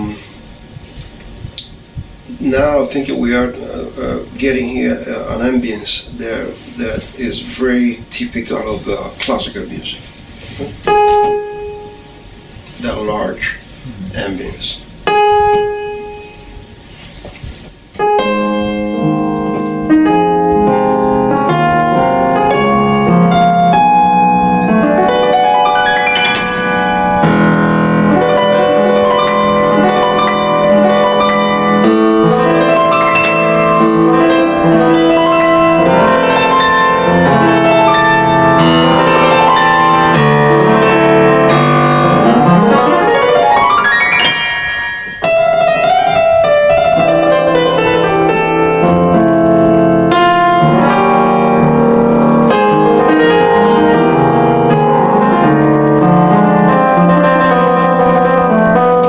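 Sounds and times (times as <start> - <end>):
reverberant piano playing: 10.1 - 12.8, 14.9 - 59.0.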